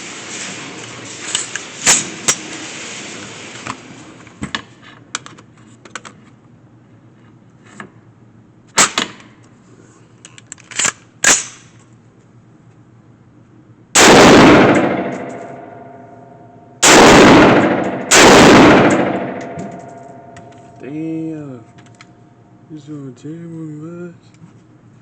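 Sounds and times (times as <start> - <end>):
loud gunshots: 14.0 - 15.9, 16.8 - 20.4.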